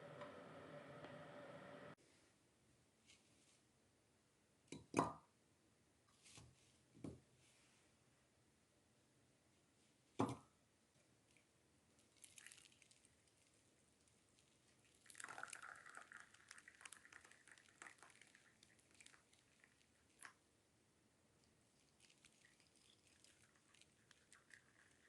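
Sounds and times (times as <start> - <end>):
soft wet squishing: 11.2 - 15.2, 16.2 - 20.4, 21.4 - 25.0.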